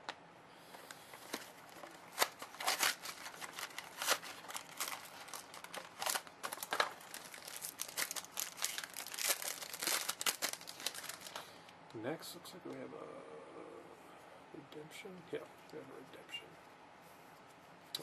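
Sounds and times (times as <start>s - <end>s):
packaging crinkling and rustling: 0.7s - 11.6s.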